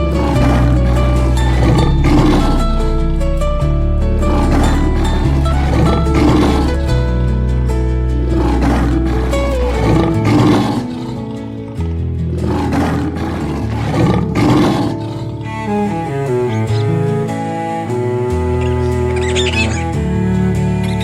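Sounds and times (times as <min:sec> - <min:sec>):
animal roaring: 0:00.0 - 0:03.2, 0:04.2 - 0:07.0, 0:08.2 - 0:11.8, 0:12.4 - 0:16.5, 0:18.4 - 0:21.0
background music low notes: 0:00.0 - 0:21.0.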